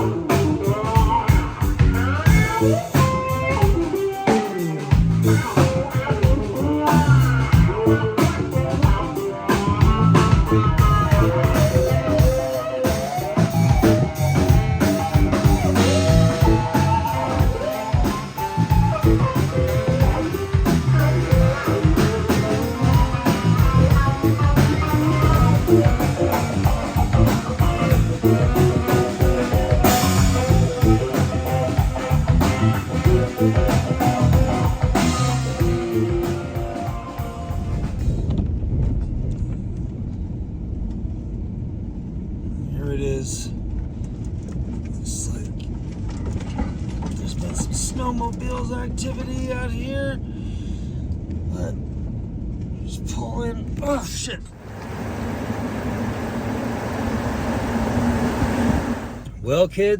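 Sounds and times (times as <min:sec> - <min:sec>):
drum kit beat: 0:00.0 - 0:38.2
guitar rock music: 0:00.0 - 0:38.3.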